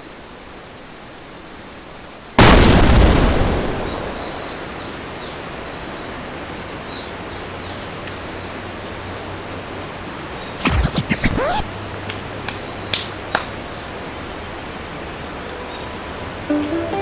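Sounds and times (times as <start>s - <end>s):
loud burst: 10.6s - 11.8s.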